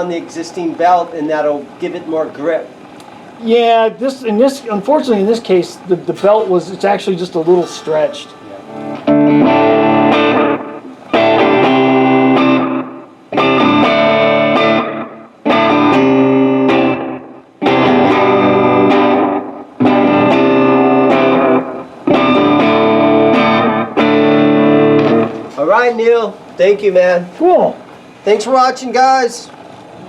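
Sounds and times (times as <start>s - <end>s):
electric guitar chords with delay: 7.6s - 25.6s.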